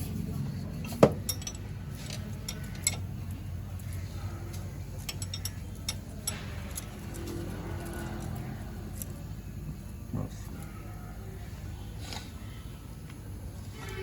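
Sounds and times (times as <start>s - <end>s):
steady low hum: 0.0s - 14.0s
metal tools clinking on metal: 0.8s - 9.2s.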